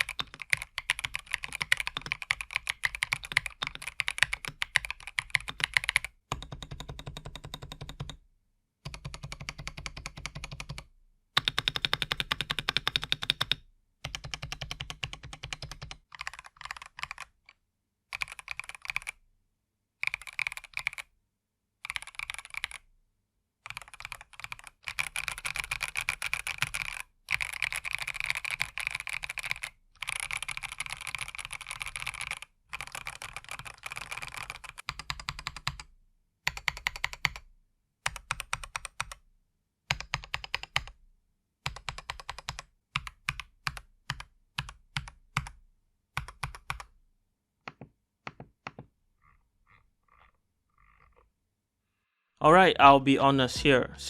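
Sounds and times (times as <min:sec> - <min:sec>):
typing on mechanical keyboard: 0:00.0 - 0:08.2, 0:08.9 - 0:19.2, 0:20.0 - 0:21.1, 0:21.8 - 0:22.9, 0:23.6 - 0:35.9, 0:36.5 - 0:39.2, 0:39.9 - 0:41.0, 0:41.6 - 0:47.0.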